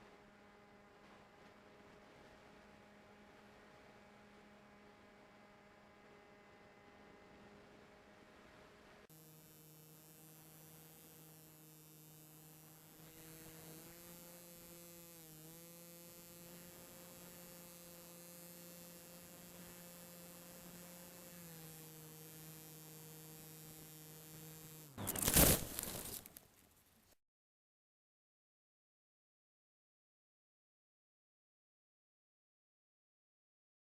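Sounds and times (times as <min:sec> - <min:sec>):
model plane motor humming: 0:00.0 - 0:26.3.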